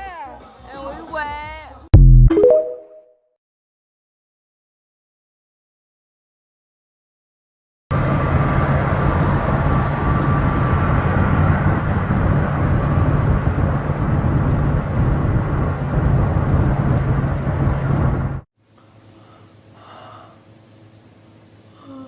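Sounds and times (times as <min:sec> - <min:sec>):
loud vehicle rumble: 0:07.9 - 0:18.5.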